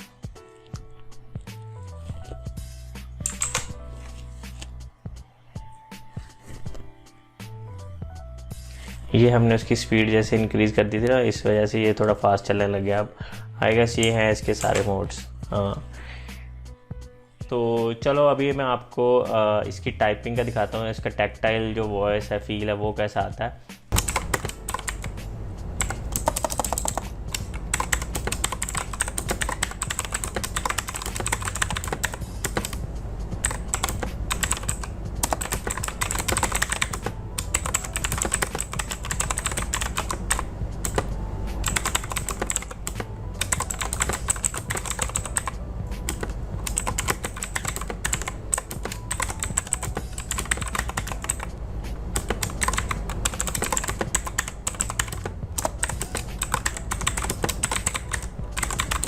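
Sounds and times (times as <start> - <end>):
clicky mechanical keyboard typing: 3.2 - 3.7, 14.0 - 14.9, 24.0 - 25.1, 25.8 - 32.8, 33.4 - 51.5, 52.2 - 59.0.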